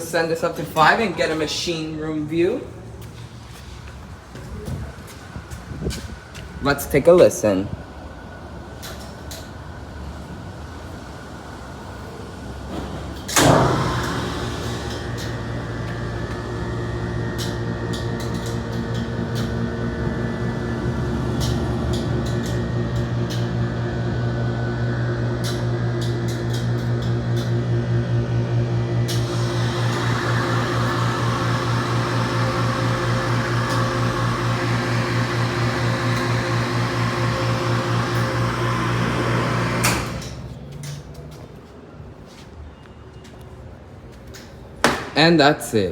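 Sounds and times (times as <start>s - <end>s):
pump unit clunk: 12.7s - 16.0s
pump motor humming: 13.4s - 23.2s, 29.0s - 40.3s.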